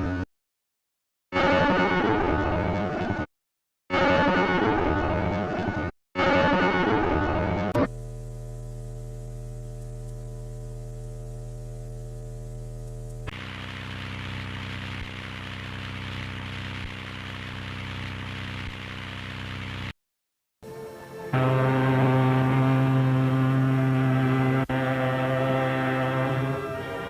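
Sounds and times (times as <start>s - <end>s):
electrical mains hum: 7.8s - 17.3s.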